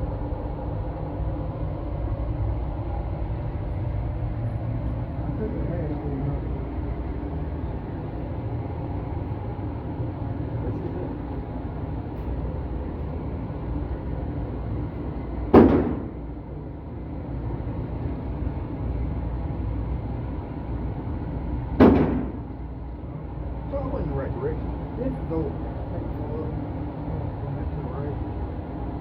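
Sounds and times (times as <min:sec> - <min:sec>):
low outdoor rumble: 0:00.0 - 0:29.0
gunshot with echo: 0:15.5 - 0:16.2, 0:21.8 - 0:22.5.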